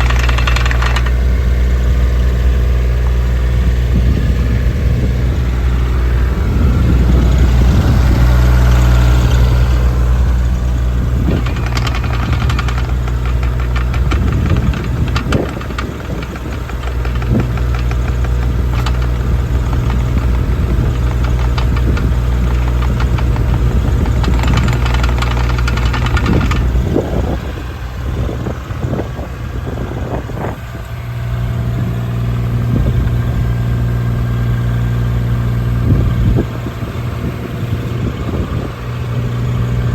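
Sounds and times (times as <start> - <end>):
metal knocks and clanks: 0.0 - 1.2, 11.0 - 27.4
diesel engine running: 0.0 - 39.9.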